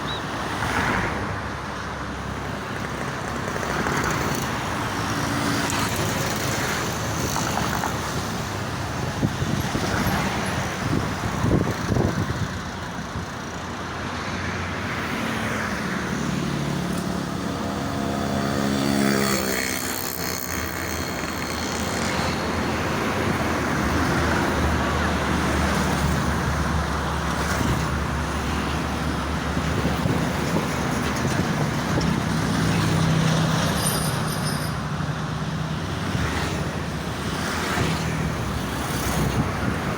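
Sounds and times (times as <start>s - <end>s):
road traffic passing: 0.0s - 39.9s.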